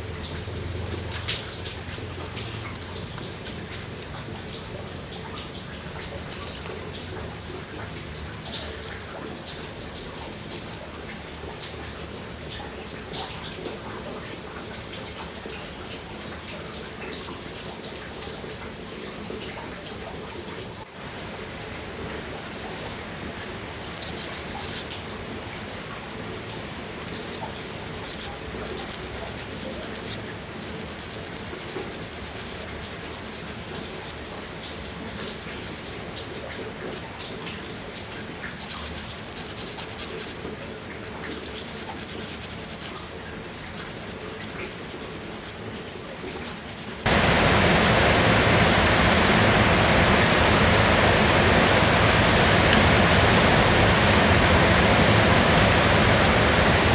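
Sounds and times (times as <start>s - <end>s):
water running: 0.0s - 11.8s, 23.5s - 56.9s
fast rhythmic rubbing strokes: 28.0s - 30.2s, 30.8s - 34.1s, 34.9s - 36.0s, 38.5s - 45.6s, 46.3s - 47.1s.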